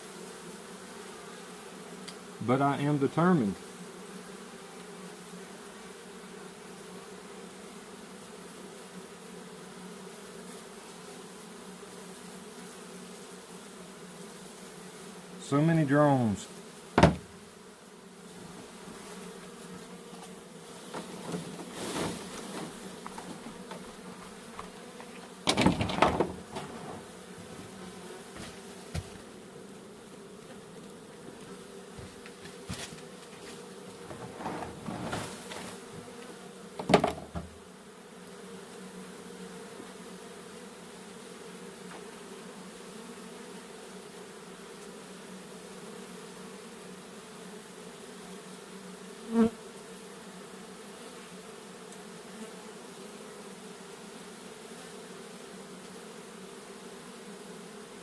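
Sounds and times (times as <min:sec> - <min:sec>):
bees buzzing: 0:00.0 - 0:58.0
handling bumps and scrapes: 0:17.0 - 0:17.4, 0:20.1 - 0:29.2, 0:31.9 - 0:36.1, 0:36.8 - 0:37.6.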